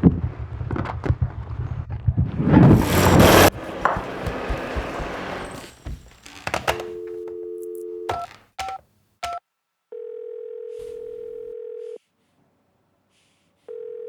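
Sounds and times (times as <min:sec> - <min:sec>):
steady telephone tone: 0:06.3 - 0:12.0, 0:13.7 - 0:14.0
telephone line tone: 0:06.3 - 0:12.0, 0:13.7 - 0:14.0
telephone click: 0:06.6 - 0:09.4.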